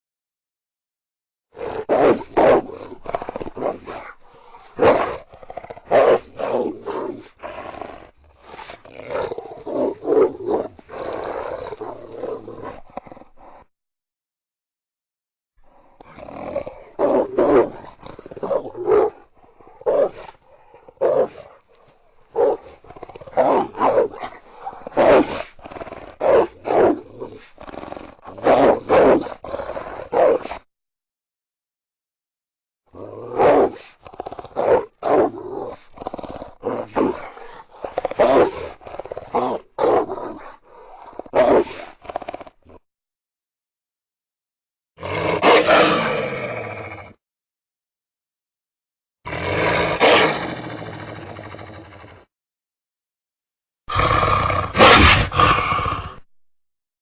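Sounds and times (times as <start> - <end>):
animal growls and snarling cries: 1.6 - 13.7, 15.8 - 30.6, 33.0 - 42.8, 45.0 - 47.2, 49.3 - 52.3, 53.9 - 56.3.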